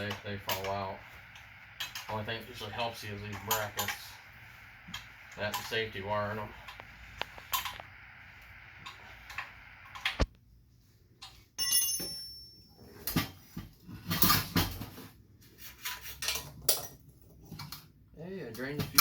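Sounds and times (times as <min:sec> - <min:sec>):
high metallic ring: 0:11.6 - 0:13.0.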